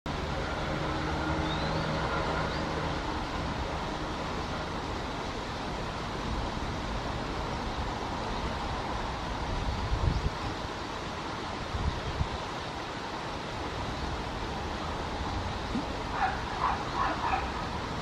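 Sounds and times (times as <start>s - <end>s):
road traffic rumble: 0.1s - 18.0s.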